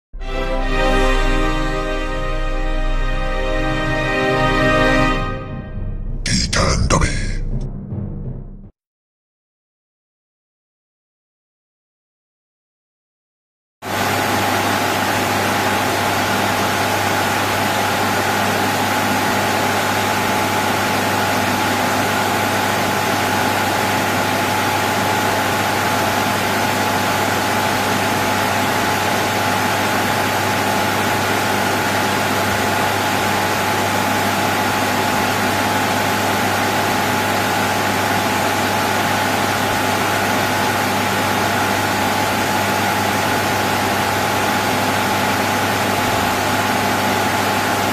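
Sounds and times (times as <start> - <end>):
cooling fans hissing: 13.9 - 47.9.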